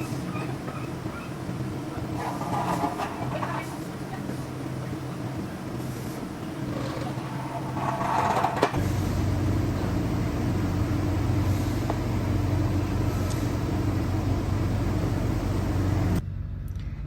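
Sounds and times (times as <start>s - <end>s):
truck engine running: 0.0s - 16.2s.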